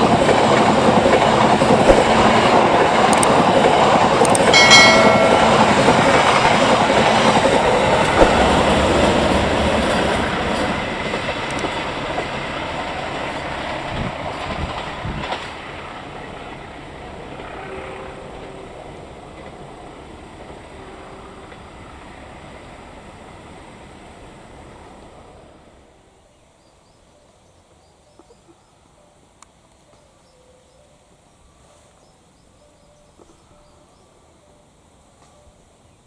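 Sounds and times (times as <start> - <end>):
train rumble: 0.0 - 26.2.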